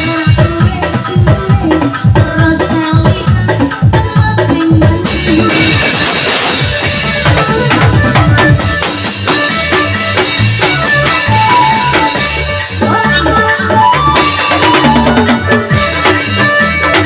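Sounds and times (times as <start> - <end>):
drum kit beat: 0.0 - 17.0
pitched melody instruments: 5.0 - 17.0.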